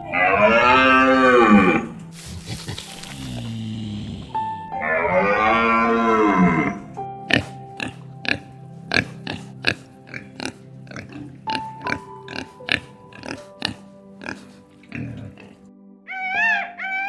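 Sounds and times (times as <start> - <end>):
background music with held notes: 0.0 - 17.0
short sharp animal calls: 2.2 - 3.8.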